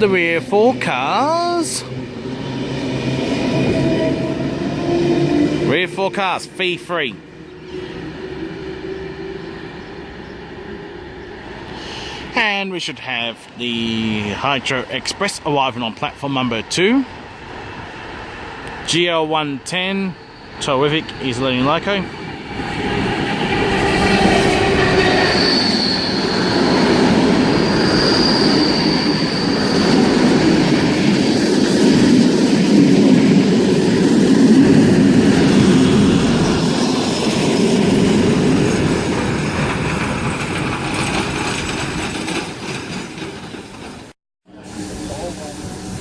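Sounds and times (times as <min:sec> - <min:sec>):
train rumbling past: 0:00.0 - 0:46.0
high wheel squeal: 0:22.0 - 0:32.0.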